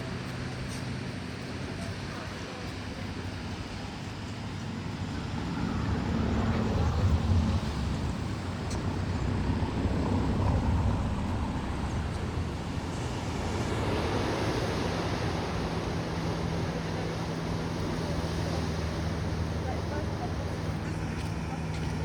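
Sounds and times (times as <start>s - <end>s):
surf washing against rocks: 0.0s - 22.0s
wind rumbling on microphone: 0.0s - 22.0s.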